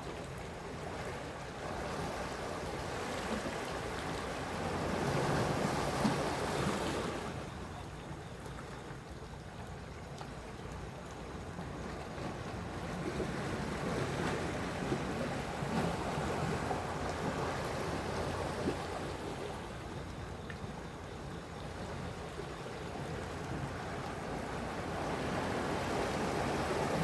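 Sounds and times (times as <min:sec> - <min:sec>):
sea waves washing in: 0:23.1 - 0:27.0.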